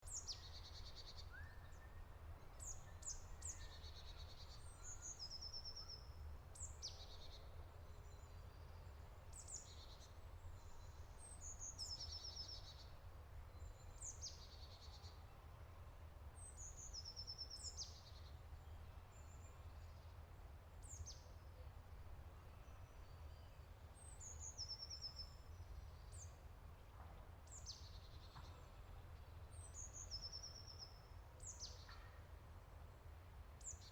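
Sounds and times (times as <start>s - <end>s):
songbirds singing trills: 0.0s - 15.5s, 16.4s - 32.4s.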